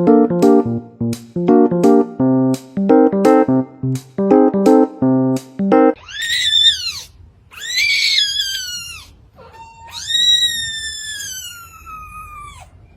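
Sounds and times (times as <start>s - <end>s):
cat meowing loudly: 6.0s - 12.7s.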